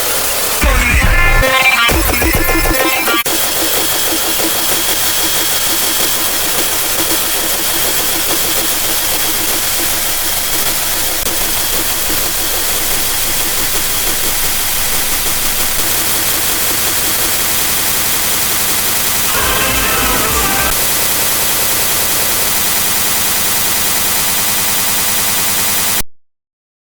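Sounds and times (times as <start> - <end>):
static-like hiss: 3.1 - 24.3.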